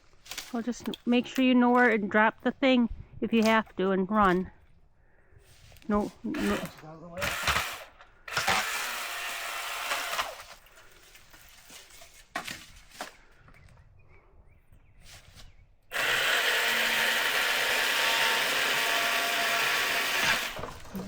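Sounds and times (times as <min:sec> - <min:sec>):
pole saw cutting wood: 0:06.2 - 0:10.6, 0:15.9 - 0:21.0.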